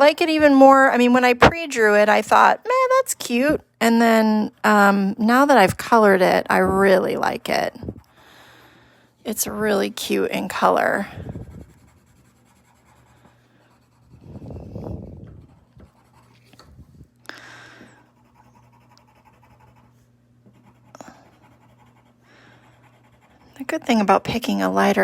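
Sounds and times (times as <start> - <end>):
faint low hum: 0.0 - 25.0
marker scratching on paper: 11.2 - 16.5, 18.1 - 23.4.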